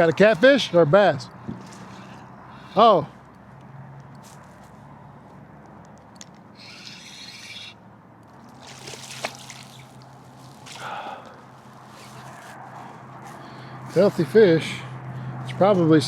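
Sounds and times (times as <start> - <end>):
fish splashing: 8.2 - 11.5
rustling: 8.4 - 13.5.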